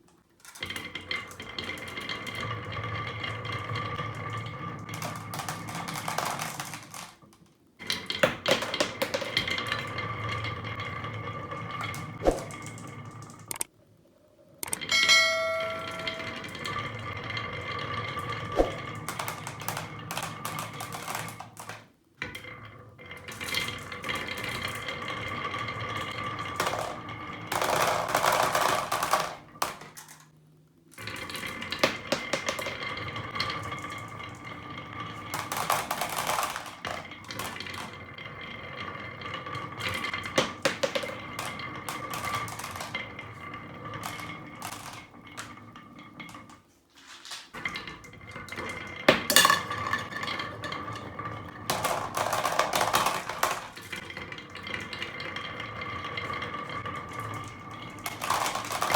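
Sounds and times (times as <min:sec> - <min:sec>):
marbles rattling down a track: 0:00.0 - 0:13.7, 0:14.6 - 0:58.9
steady ringing tone: 0:14.8 - 0:17.5.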